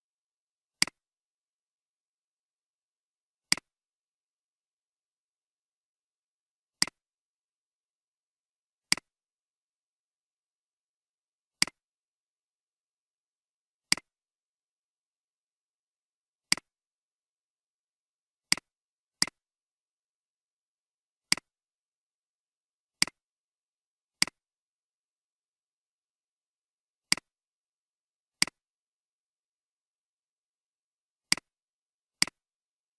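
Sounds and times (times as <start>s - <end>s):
computer mouse clicks: 0.8s - 1.0s, 3.5s - 3.7s, 27.1s - 27.3s, 31.3s - 31.5s, 32.2s - 32.4s.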